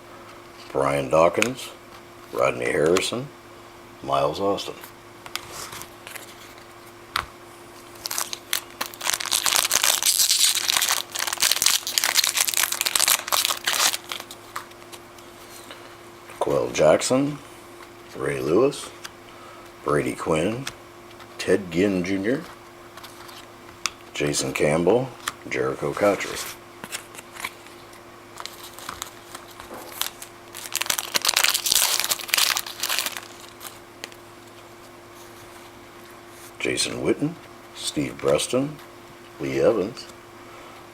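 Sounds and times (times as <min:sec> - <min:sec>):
foil wrapper crinkling: 0:07.8 - 0:15.1, 0:25.9 - 0:34.6.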